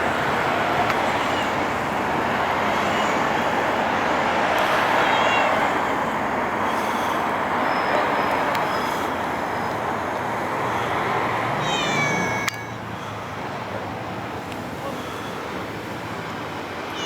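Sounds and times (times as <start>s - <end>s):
road traffic noise: 0.0s - 17.0s
cat meowing: 2.2s - 6.1s, 11.5s - 12.9s
faint short high calls: 10.7s - 13.4s.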